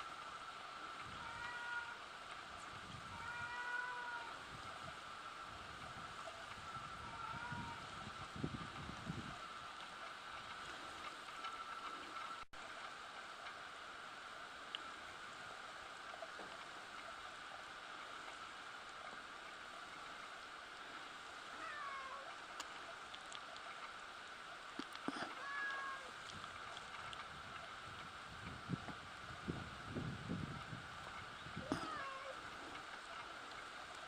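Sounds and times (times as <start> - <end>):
steady background hiss: 0.0 - 34.0
faint cat meow: 1.2 - 2.0, 3.1 - 4.4, 7.0 - 7.8, 21.6 - 22.3, 25.2 - 26.2, 31.6 - 32.5.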